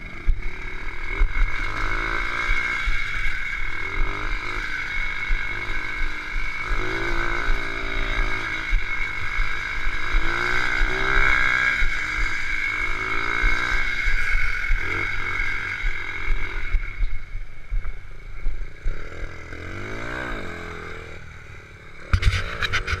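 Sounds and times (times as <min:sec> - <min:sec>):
minibike engine accelerating: 0:00.0 - 0:23.0
sharp knocks: 0:22.1 - 0:23.0.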